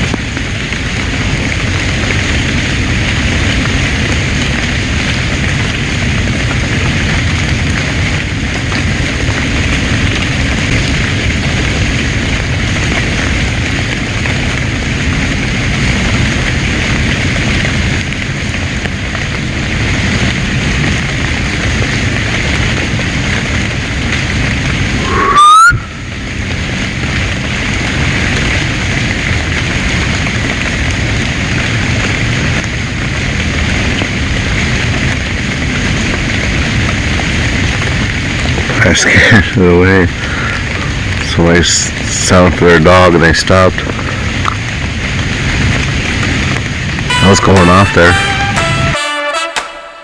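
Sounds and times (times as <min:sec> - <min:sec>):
heavy rain hissing: 0:00.0 - 0:50.0
loud rising tone: 0:24.9 - 0:26.2.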